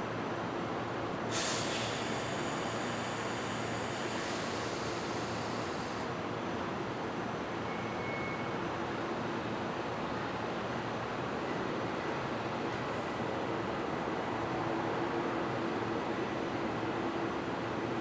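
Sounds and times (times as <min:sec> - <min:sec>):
hiss: 0:01.3 - 0:06.1.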